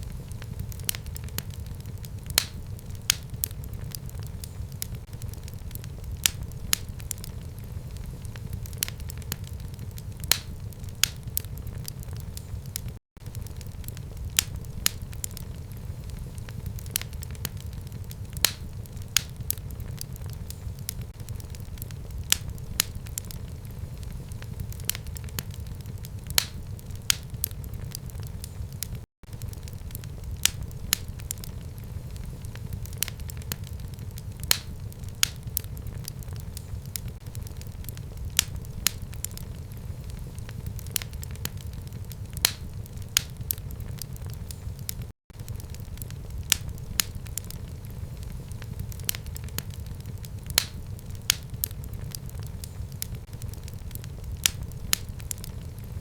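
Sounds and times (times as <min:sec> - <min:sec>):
fire crackles and pops: 0:00.0 - 0:56.0
fire low rumble: 0:00.0 - 0:56.0.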